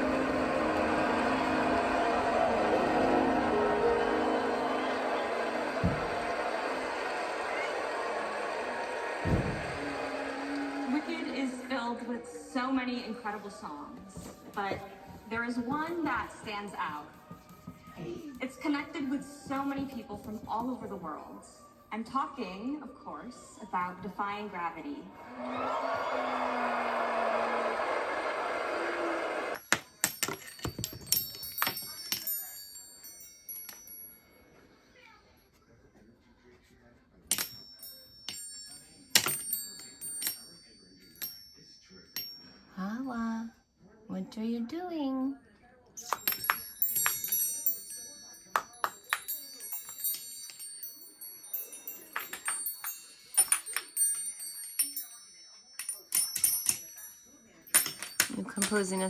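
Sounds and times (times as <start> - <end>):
loud tv sound: 0.0 - 29.7, 34.5 - 46.3
metal wind chimes clinking: 29.6 - 34.8, 37.3 - 43.2, 46.0 - 59.0.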